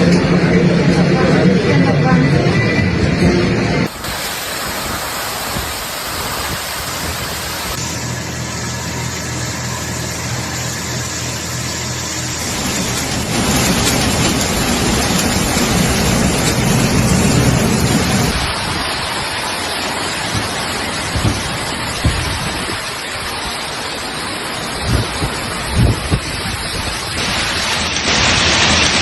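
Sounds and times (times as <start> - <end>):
running storm water: 2.7 - 29.0
heavy rain downpour: 3.8 - 29.0.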